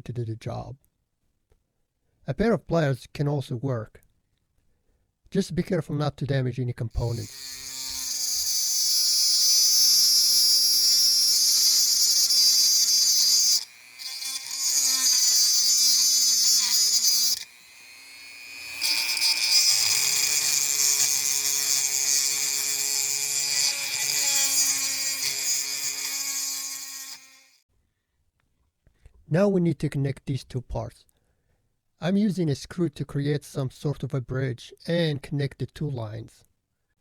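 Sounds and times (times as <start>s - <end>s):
rotary tool whining: 7.2s - 27.6s.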